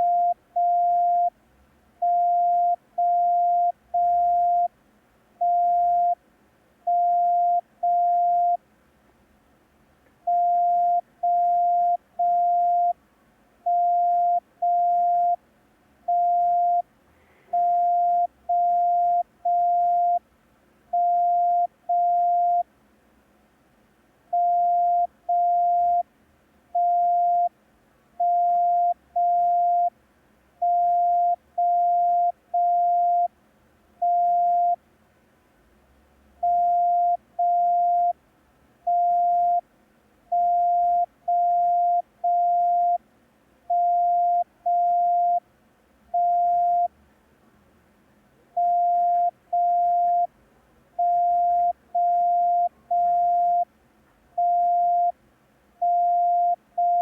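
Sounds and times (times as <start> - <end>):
morse code beeps: 0.0 - 1.3, 2.0 - 4.7, 5.4 - 6.2, 6.9 - 8.6, 10.3 - 13.0, 13.7 - 15.4, 16.1 - 16.8, 17.5 - 20.2, 21.0 - 22.6, 24.4 - 26.0, 26.8 - 27.5, 28.2 - 29.9, 30.6 - 33.3, 34.0 - 34.8, 36.4 - 38.2, 38.9 - 39.6, 40.3 - 43.0, 43.7 - 45.4, 46.2 - 46.9, 48.6 - 50.3, 51.0 - 53.7, 54.4 - 55.2, 55.8 - 57.0.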